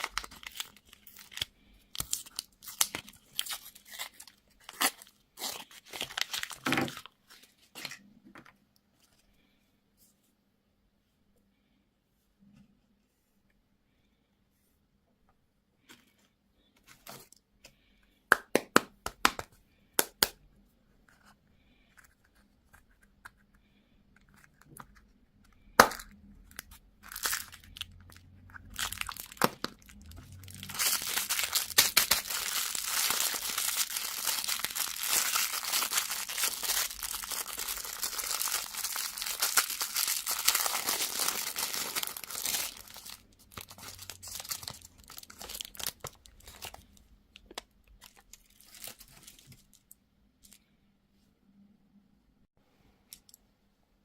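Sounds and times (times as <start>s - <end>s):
candy wrapper crinkling: 0.0s - 8.0s, 25.8s - 50.6s.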